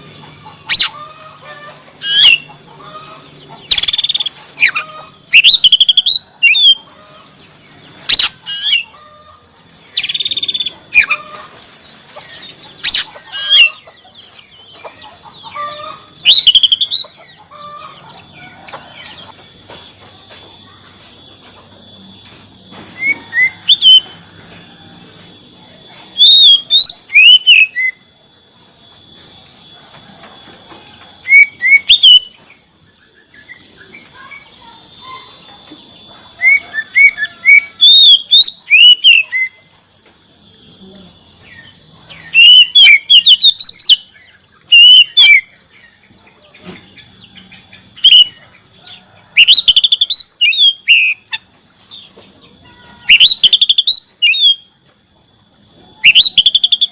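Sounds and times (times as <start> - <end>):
faint high background hum: 0.0 - 56.9
bird singing whistled phrases: 3.7 - 6.8, 16.2 - 17.1, 23.0 - 24.2, 26.2 - 28.0, 31.2 - 32.4, 36.4 - 39.6, 41.5 - 45.5, 48.0 - 48.4, 49.4 - 51.3, 53.1 - 54.7, 56.0 - 56.9.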